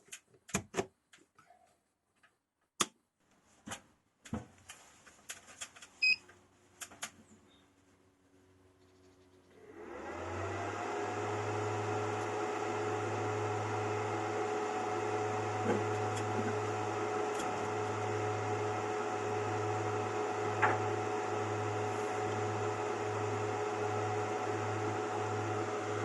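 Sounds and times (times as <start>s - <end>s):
cooling fan whirring: 9.6s - 26.0s.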